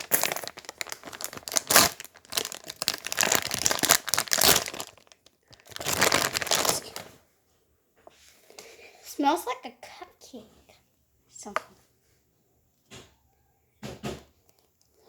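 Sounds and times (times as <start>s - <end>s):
plastic packaging crinkling and tearing: 0.0s - 7.1s.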